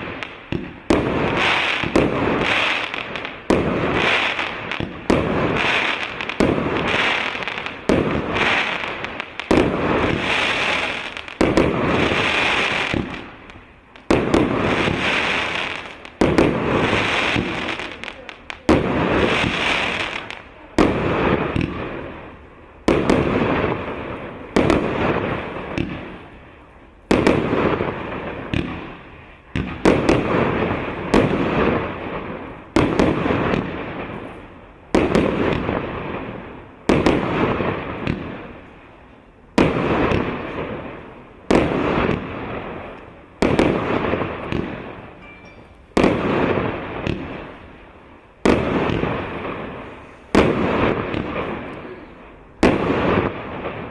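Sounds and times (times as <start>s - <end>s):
firework battery bangs: 0.0s - 22.0s, 41.5s - 47.6s.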